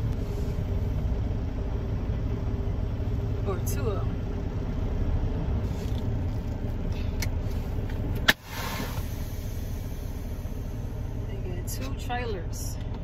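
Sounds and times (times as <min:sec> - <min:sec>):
diesel engine rumbling: 0:00.0 - 0:13.0
short air hiss: 0:08.3 - 0:10.8.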